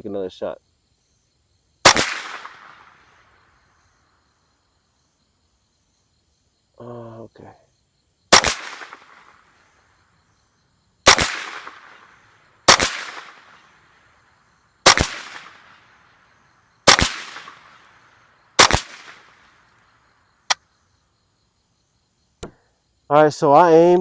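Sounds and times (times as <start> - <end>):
rifle shots with echo: 1.8 - 3.1, 8.3 - 9.4, 11.0 - 13.6, 14.8 - 16.0, 16.8 - 18.0, 18.6 - 19.4.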